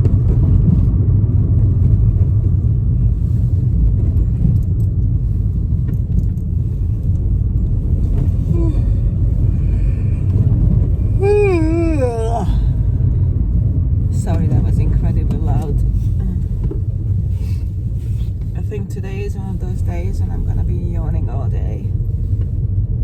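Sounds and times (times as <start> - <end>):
car rumble inside cabin: 0.0 - 23.0
person yawning: 8.5 - 10.3, 11.0 - 12.8.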